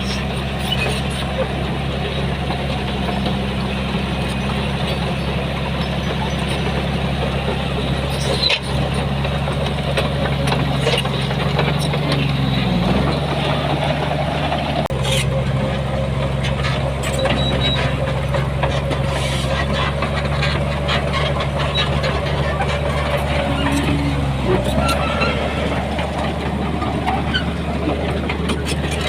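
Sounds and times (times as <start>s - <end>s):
diesel engine running under load: 0.0s - 29.0s
clanks and knocks: 4.4s - 14.2s, 16.3s - 29.0s.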